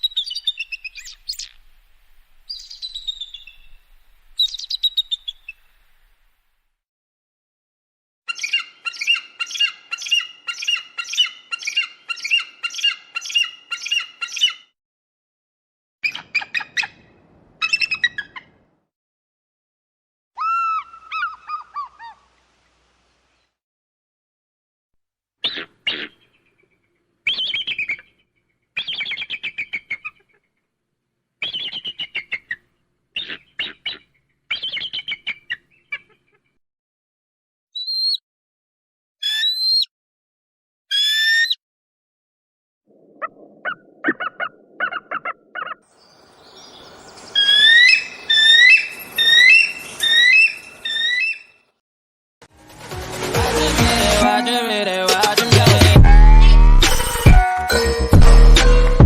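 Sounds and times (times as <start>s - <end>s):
eagle calling: 20.4s - 22.3s, 43.2s - 45.8s, 46.5s - 51.5s
eagle chattering calls: 47.3s - 51.5s.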